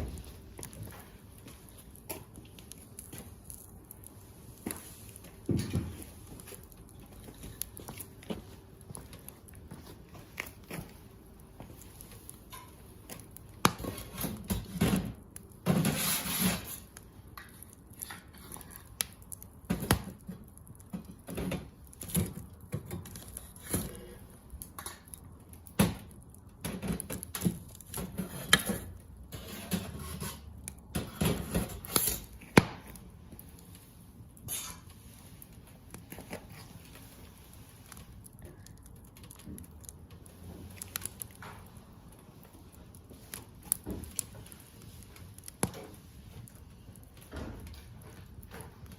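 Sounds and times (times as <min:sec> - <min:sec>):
bonfire crackling and popping: 0:00.0 - 0:48.9.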